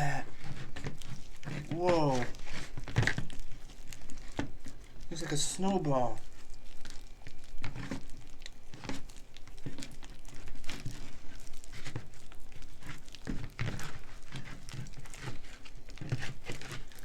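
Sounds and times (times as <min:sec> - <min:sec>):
hands squeezing slime crackling: 0:00.0 - 0:17.0.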